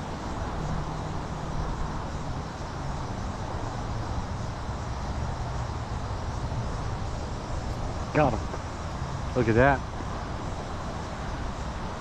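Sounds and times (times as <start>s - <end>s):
creek water rushing: 0.0s - 12.0s.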